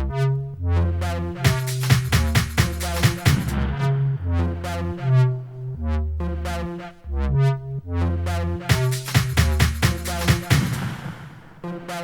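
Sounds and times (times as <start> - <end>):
dance music drum hits and bass: 1.4 - 4.7, 8.7 - 12.0.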